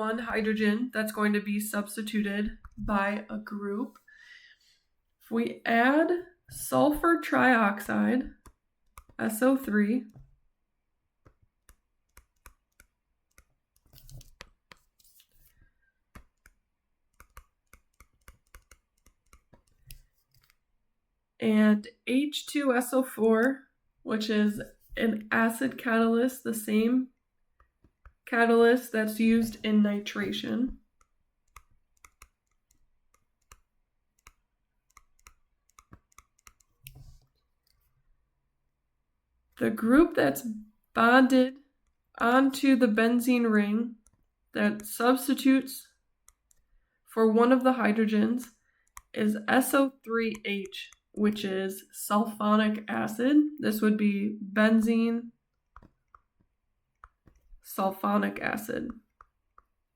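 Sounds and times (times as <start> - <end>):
faint irregular clicks: 8.3 - 9.2, 11.2 - 20.7, 30.8 - 37.9, 44.0 - 44.9, 46.2 - 46.7, 48.4 - 49.2, 55.5 - 57.6, 58.8 - 59.9.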